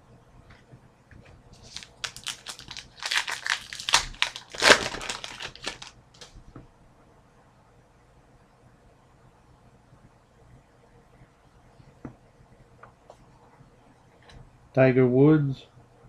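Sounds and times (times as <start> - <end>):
wrapper crinkling: 1.6 - 6.4.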